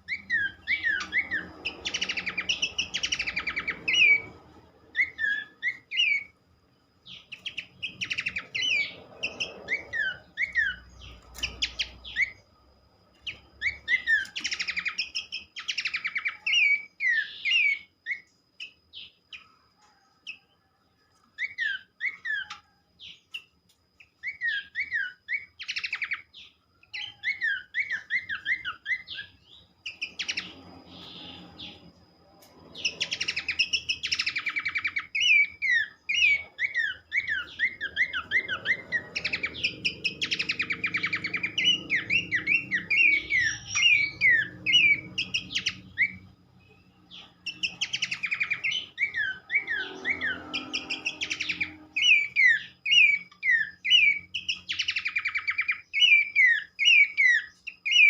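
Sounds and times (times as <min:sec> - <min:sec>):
bird buzzy rattling calls: 0:00.0 - 0:06.3, 0:07.1 - 0:12.5, 0:32.5 - 0:58.0
bird whistled song: 0:00.0 - 0:20.7, 0:21.3 - 0:58.0.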